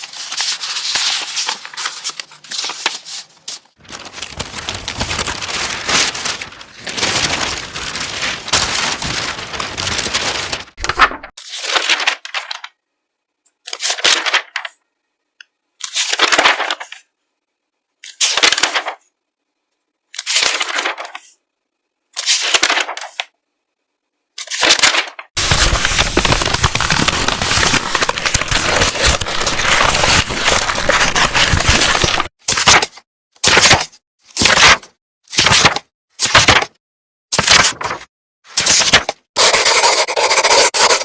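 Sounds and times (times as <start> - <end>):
paper crinkling: 0.0 - 12.7, 13.8 - 14.7, 20.2 - 21.3, 24.5 - 32.9, 37.4 - 38.0, 38.6 - 41.0.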